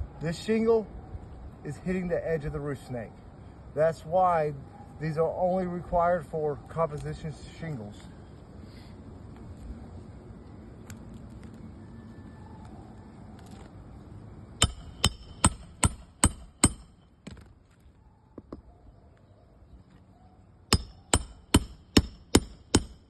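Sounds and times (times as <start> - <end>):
hammer clanking on metal: 14.6 - 16.9.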